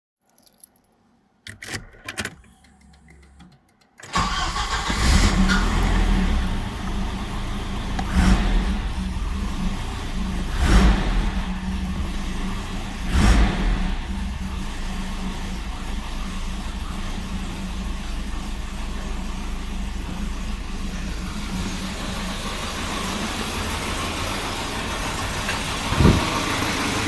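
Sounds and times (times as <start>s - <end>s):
clicks: 1.5s - 4.2s
car engine rough idle: 4.1s - 27.0s.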